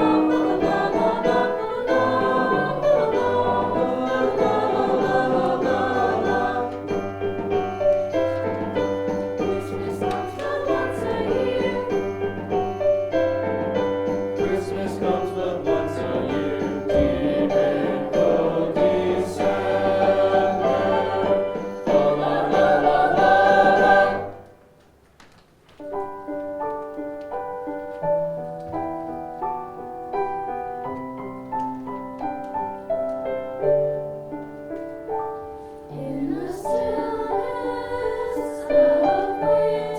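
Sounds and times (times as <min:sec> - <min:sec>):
choir singing with accompaniment: 0:00.0 - 0:24.6, 0:35.9 - 0:39.9
piano playing: 0:00.0 - 0:24.8, 0:25.8 - 0:39.9.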